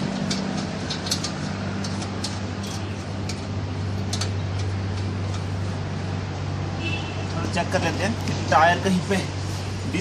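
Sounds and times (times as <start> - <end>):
spanner clicking on a nut: 0.1 - 5.5.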